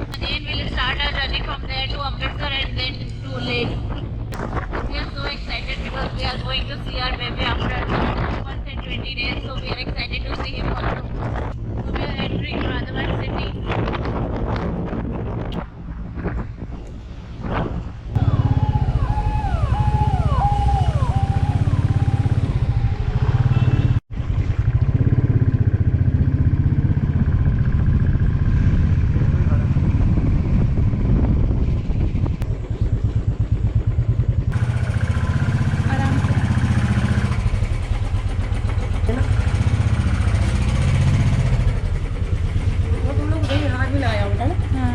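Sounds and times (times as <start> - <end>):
motorcycle engine running: 17.5 - 44.9.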